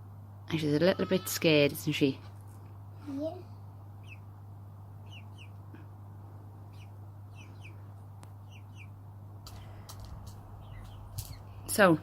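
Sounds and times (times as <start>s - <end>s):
steady low hum: 0.0s - 12.0s
chicks peeping: 3.8s - 11.8s.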